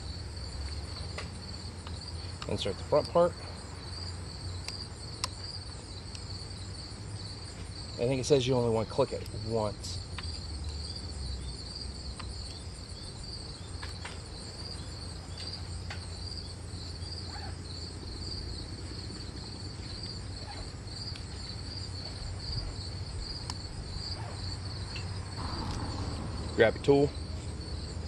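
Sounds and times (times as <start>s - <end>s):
insects chirping: 0.0s - 28.0s
low hum: 24.9s - 28.0s.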